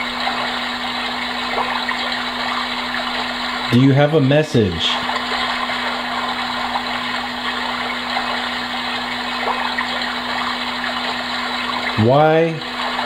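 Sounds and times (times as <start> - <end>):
running stream water: 0.0 - 13.0.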